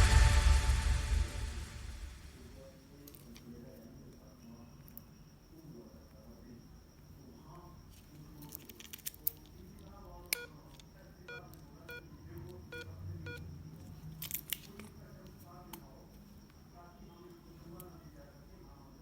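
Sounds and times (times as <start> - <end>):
faint high whine: 0.0 - 6.6
phone key tone beeps: 10.4 - 10.6, 12.7 - 13.4.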